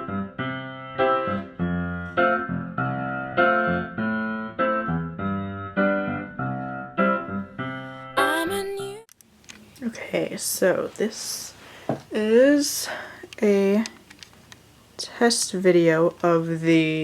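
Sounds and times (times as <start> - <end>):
keyboard chords: 0.0 - 9.0.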